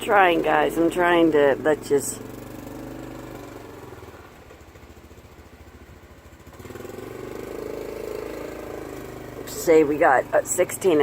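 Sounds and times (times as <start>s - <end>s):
small engine running: 0.0s - 11.0s.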